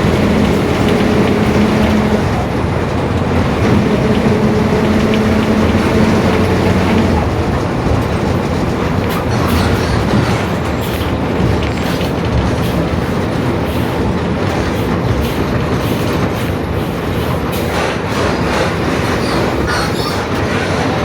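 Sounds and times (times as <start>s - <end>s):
rear differential growl: 0.0s - 16.6s
bus running noise: 0.0s - 21.0s.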